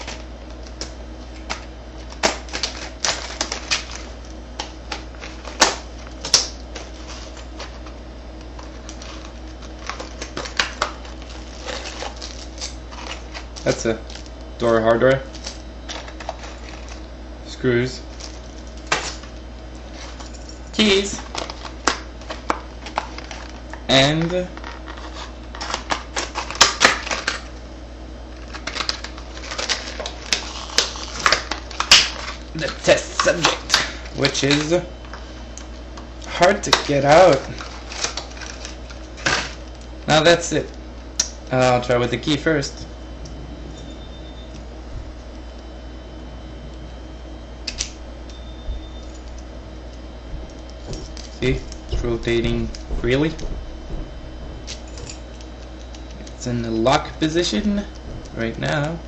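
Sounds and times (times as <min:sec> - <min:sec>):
packaging clicks and snaps: 0:00.0 - 0:14.4, 0:28.4 - 0:34.7, 0:36.7 - 0:39.9, 0:47.6 - 0:48.4
steady low hum: 0:00.0 - 0:59.0
packaging and hardware clicking: 0:36.7 - 0:39.9.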